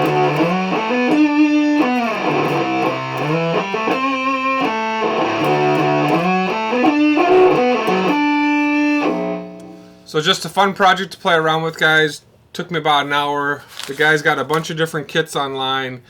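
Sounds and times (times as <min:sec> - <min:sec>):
fuzz electric guitar: 0:00.0 - 0:10.1.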